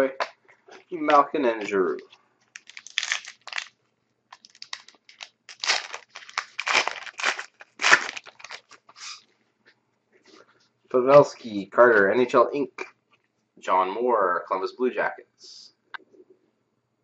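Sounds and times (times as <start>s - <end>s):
wrapper crinkling and tearing: 2.5s - 9.2s.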